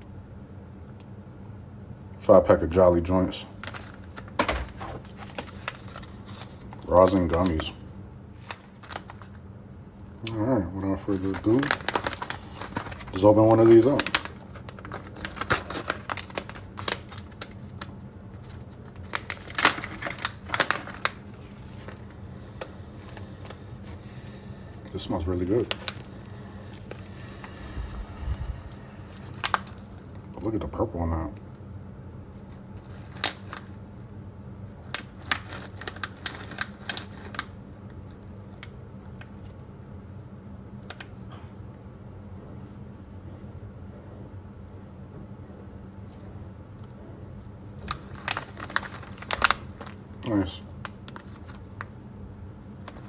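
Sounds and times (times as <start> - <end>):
steady low hum: 0.0 - 53.0
packaging clicking and crinkling: 3.6 - 7.8, 8.4 - 9.4, 11.0 - 24.0, 24.8 - 27.1, 29.1 - 30.3, 32.4 - 33.8, 34.8 - 39.6, 47.7 - 52.0, 52.8 - 53.0.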